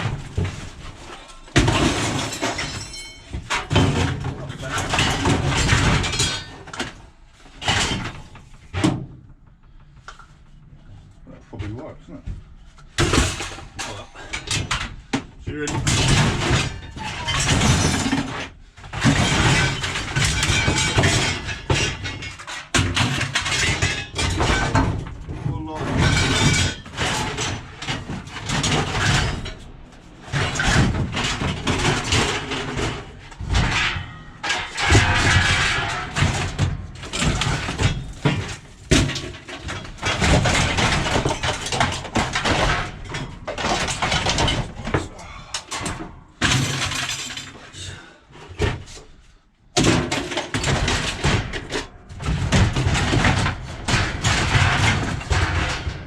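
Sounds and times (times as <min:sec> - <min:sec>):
scrap metal clanking: 0:15.8 - 0:47.8.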